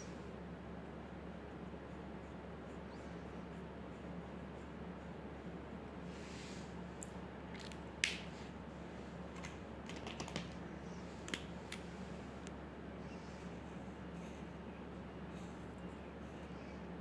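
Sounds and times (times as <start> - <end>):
steady low hum: 10.5 - 17.0.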